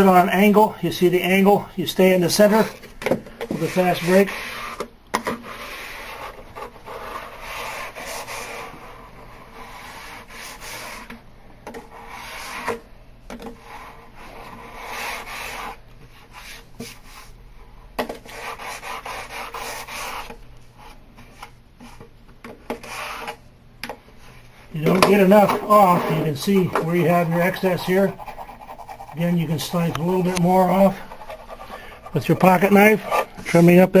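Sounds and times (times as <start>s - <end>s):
sandpaper rubbing along an edge: 5.5s - 9.0s, 18.3s - 20.3s, 24.8s - 33.9s.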